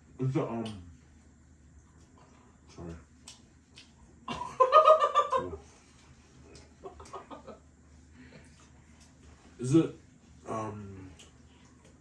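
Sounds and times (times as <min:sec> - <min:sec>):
person laughing: 0:04.3 - 0:05.6.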